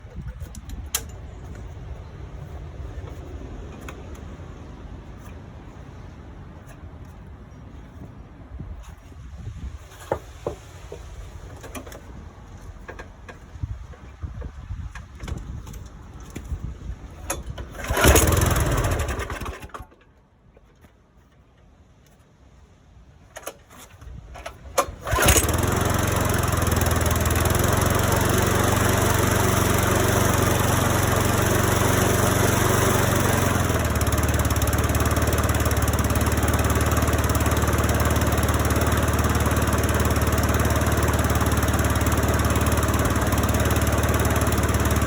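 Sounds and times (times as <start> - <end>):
lawn mower engine running: 17.2 - 20.0, 23.3 - 45.0.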